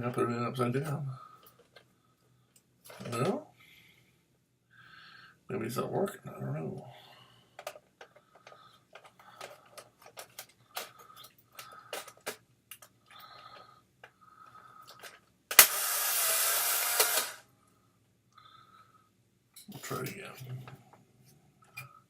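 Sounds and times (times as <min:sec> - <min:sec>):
camera shutter click: 0:15.5 - 0:17.4
film ejection motor whirring: 0:15.5 - 0:17.4.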